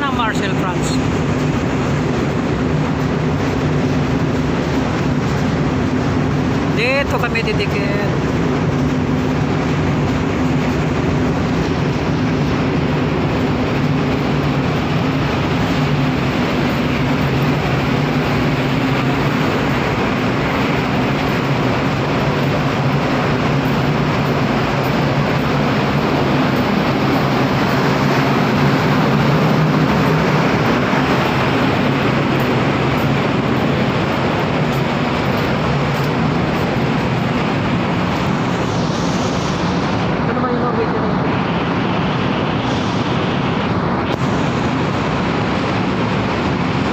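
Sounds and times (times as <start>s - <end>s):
rushing noise: 0.0s - 46.9s
ship engine hum: 0.0s - 46.9s.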